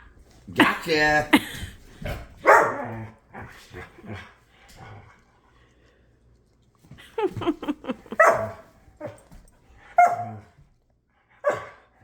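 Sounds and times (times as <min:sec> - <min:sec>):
dog barking and yipping: 0:02.4 - 0:02.9, 0:08.0 - 0:08.6, 0:10.0 - 0:10.4.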